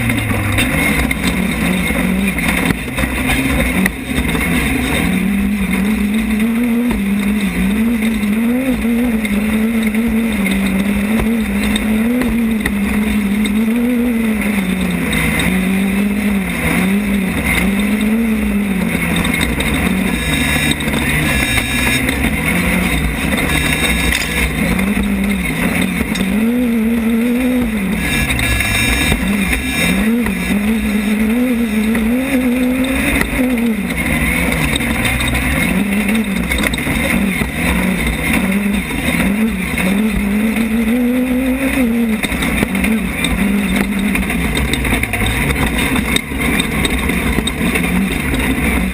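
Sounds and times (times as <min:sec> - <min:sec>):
race car engine running hard: 0:00.0 - 0:48.9
wind and road noise: 0:00.0 - 0:48.9.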